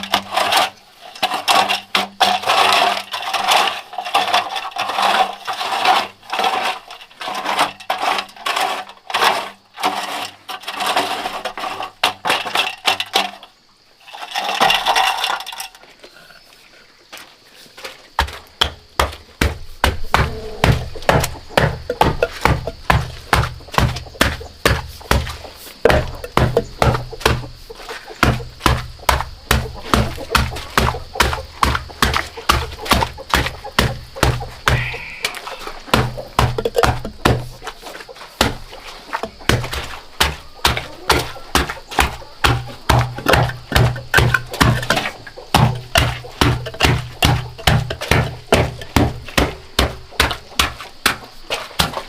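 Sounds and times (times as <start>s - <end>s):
hard knocking blows: 18.2s - 27.6s.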